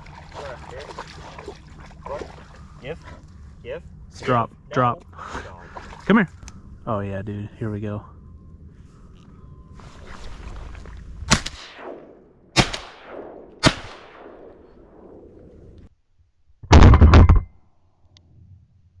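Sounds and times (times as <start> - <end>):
shotgun shots echoing: 11.3 - 15.3.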